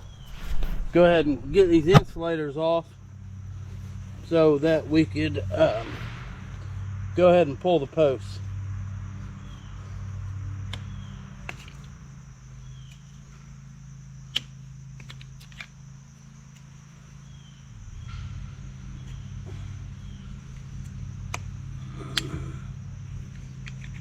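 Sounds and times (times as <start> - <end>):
low engine hum: 0.0 - 15.0, 15.8 - 24.0
fence insulators snapping off: 21.2 - 22.6.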